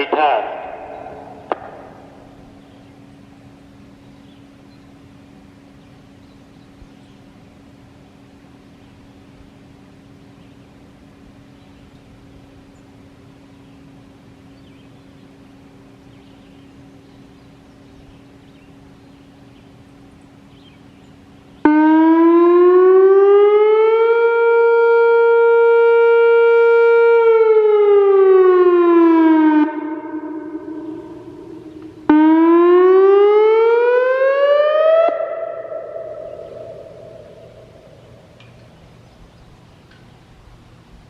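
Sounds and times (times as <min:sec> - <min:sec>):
warning siren rising and falling: 0:21.6 - 0:38.7.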